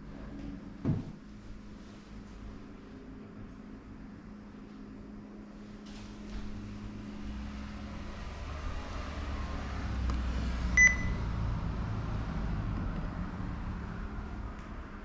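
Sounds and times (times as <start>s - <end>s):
steady low hum: 0.0s - 15.0s
short high electronic beep: 10.8s - 11.2s.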